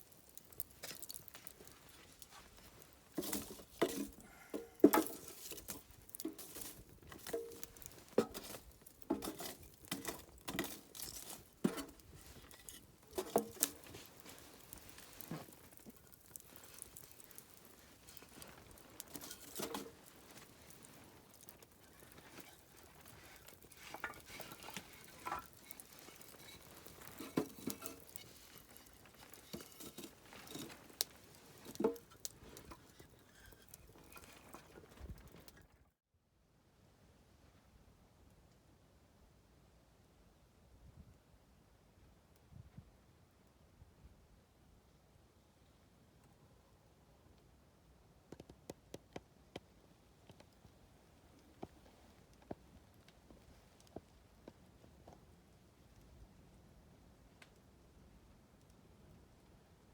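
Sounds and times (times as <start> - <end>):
small objects knocking and clinking: 0.0 - 35.2.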